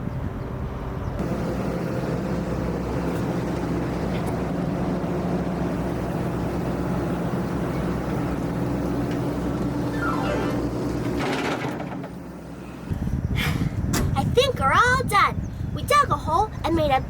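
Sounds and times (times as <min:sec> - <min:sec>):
excavator engine running: 0:00.7 - 0:13.3
higher steady tone: 0:09.8 - 0:10.9.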